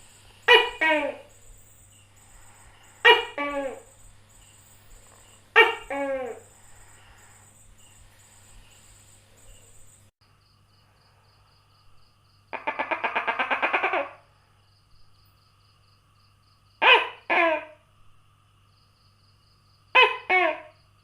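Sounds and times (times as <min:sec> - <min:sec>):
gecko to-kek calls: 0:00.4 - 0:04.0, 0:04.9 - 0:07.1, 0:12.5 - 0:14.2.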